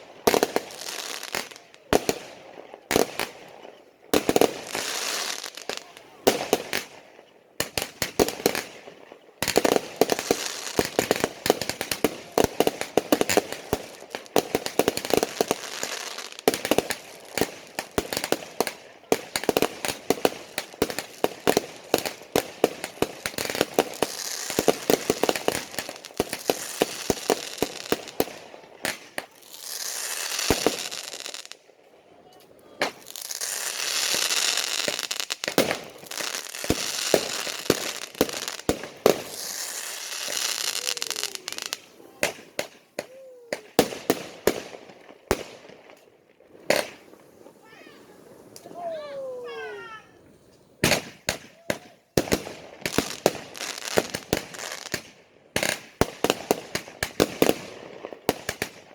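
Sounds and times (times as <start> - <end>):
fireworks cracking and banging: 0.0 - 31.7, 32.3 - 50.0, 50.8 - 58.9
fireworks hissing: 22.8 - 28.2, 32.8 - 43.1.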